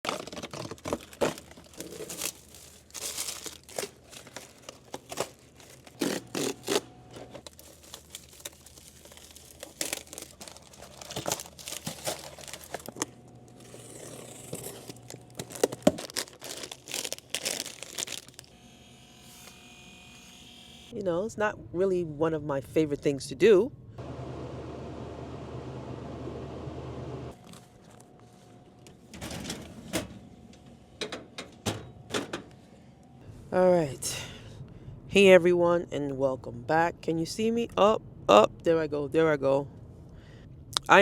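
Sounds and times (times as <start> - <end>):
packaging tearing and crinkling: 0.0 - 18.5.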